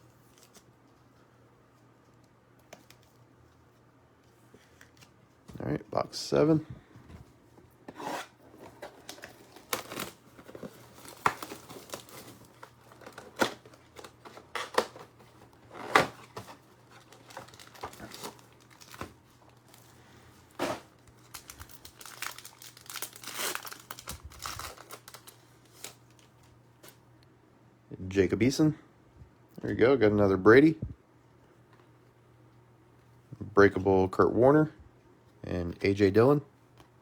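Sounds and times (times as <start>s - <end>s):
packaging torn open and crinkled: 9.0s - 15.1s, 15.7s - 19.8s, 21.0s - 27.0s.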